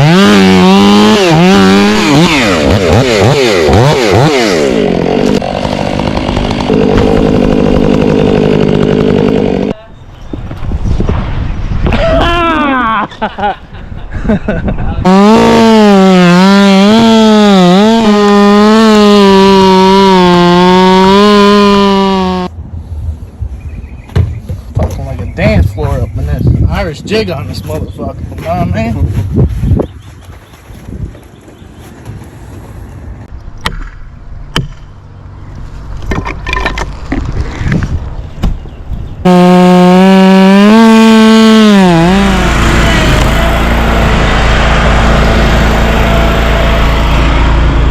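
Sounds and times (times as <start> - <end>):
chainsaw cutting wood: 0.0 - 9.8, 15.0 - 22.5, 39.2 - 47.9
sharp knocks: 24.1 - 25.0.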